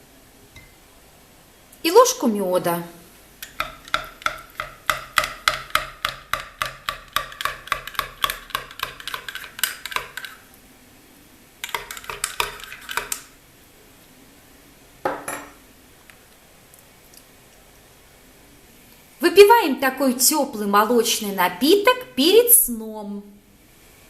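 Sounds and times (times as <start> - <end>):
spoon clinking in a cup: 11.6 - 13.2.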